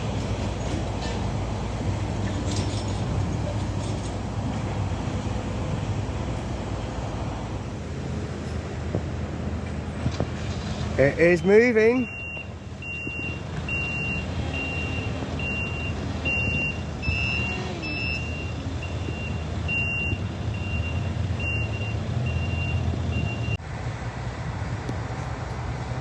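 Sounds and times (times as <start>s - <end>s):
diesel engine rumble: 0.0s - 26.0s
digger motion alarm beeping: 11.9s - 23.6s.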